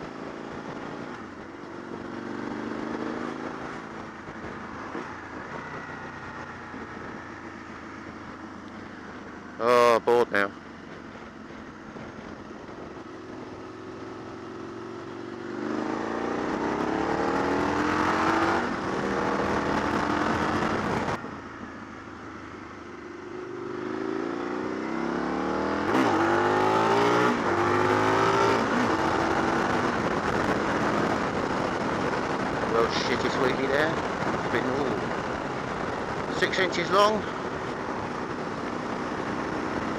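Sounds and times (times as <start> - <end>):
motorcycle engine accelerating: 0.0 - 9.6, 10.7 - 39.9.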